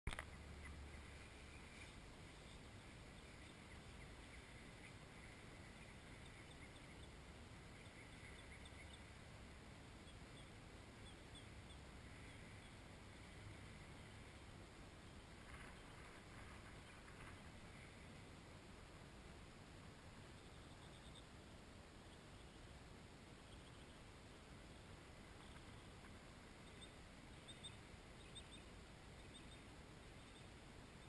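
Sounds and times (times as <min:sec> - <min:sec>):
faint bird chirps: 0:00.1 - 0:31.0
faint outdoor hiss: 0:00.1 - 0:31.0.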